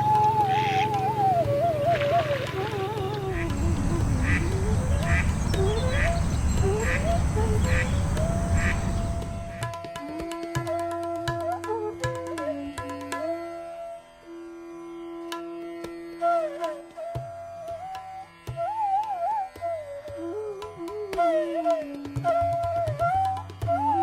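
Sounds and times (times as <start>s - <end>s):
tabla strokes: 0.0s - 13.4s, 15.3s - 24.0s
bansuri flute melody: 0.0s - 24.0s
drone: 1.8s - 9.7s.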